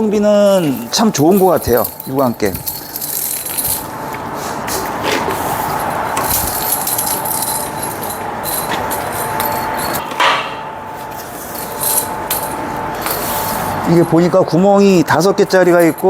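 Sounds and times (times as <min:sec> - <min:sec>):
steady background hum: 0:00.0 - 0:16.0
metal parts knocking and clinking: 0:00.6 - 0:04.0, 0:05.6 - 0:10.7, 0:11.5 - 0:13.8.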